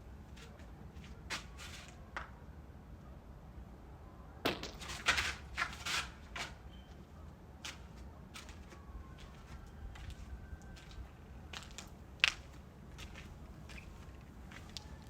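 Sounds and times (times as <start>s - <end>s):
footsteps: 7.6s - 15.0s.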